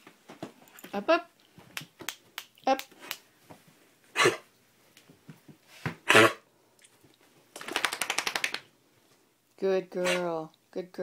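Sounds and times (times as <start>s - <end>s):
dog coughing: 4.2s - 4.4s, 6.0s - 6.4s, 10.0s - 10.3s.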